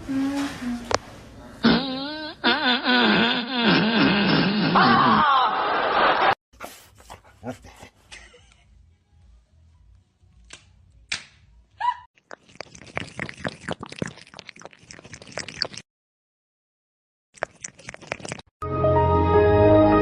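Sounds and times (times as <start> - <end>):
sharp clicks and slaps: 10.4 - 11.4.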